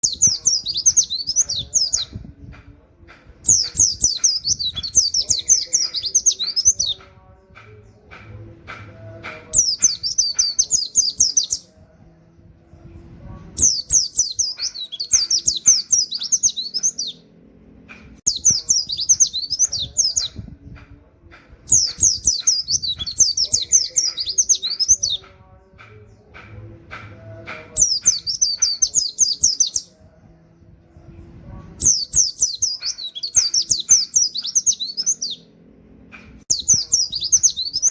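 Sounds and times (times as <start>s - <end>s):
bird twittering song: 0.0s - 2.6s, 3.4s - 8.5s, 9.3s - 11.8s, 13.6s - 17.2s, 18.2s - 26.7s, 27.7s - 31.2s, 31.8s - 35.5s, 36.2s - 37.9s
soft bird chips and clicks: 3.4s - 8.4s, 9.4s - 11.7s, 13.6s - 17.2s, 18.3s - 26.6s, 27.8s - 29.9s, 31.8s - 35.4s.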